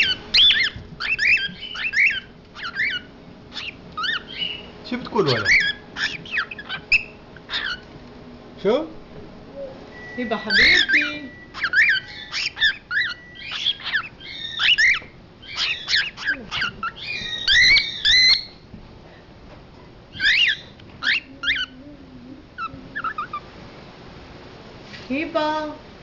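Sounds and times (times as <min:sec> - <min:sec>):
cockatiel chirping: 0:00.0 - 0:07.9, 0:10.2 - 0:18.6, 0:20.1 - 0:21.8, 0:22.6 - 0:23.4.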